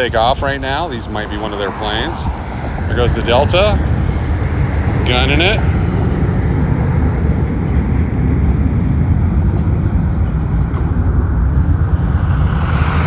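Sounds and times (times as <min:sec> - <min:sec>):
jet engines at takeoff thrust: 0:00.0 - 0:13.0.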